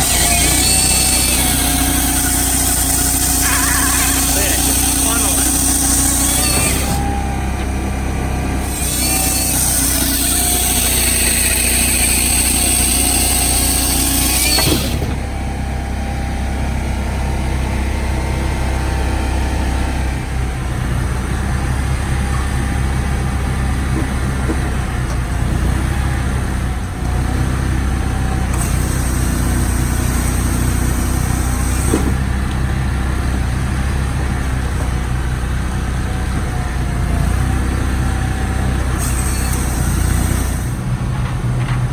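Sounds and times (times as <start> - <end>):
loud high hissing: 0.0 - 7.1
firewood processor engine drone: 0.0 - 41.9.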